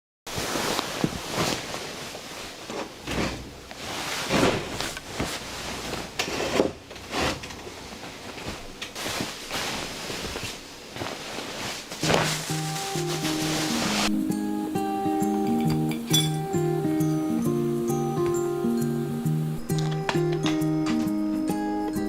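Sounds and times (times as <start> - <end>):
rustling: 0.3 - 14.3
music with held notes: 12.3 - 22.0.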